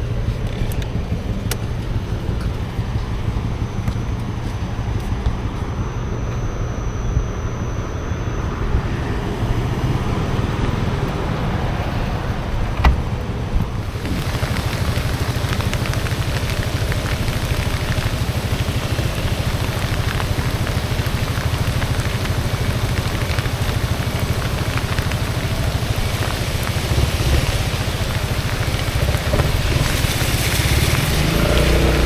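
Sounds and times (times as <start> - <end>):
scooter engine running: 0.0 - 32.0
raindrops pattering: 13.6 - 32.0.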